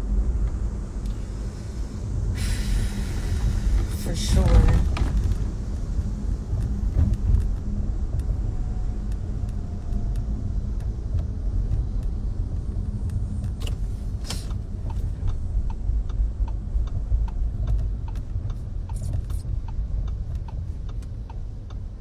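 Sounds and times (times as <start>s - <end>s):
car cabin rumble: 0.0s - 22.0s
short hiss: 2.3s - 4.2s.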